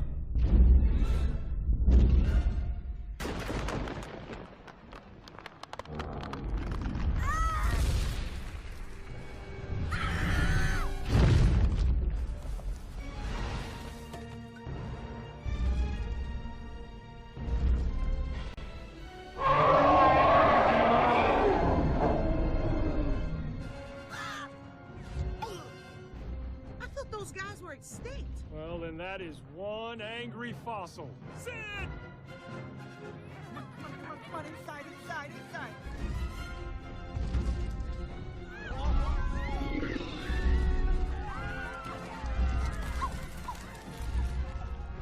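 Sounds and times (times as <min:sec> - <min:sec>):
dramatic orchestral film score: 0:00.0 - 0:04.4, 0:05.6 - 0:45.0
monster roar: 0:19.4 - 0:23.3.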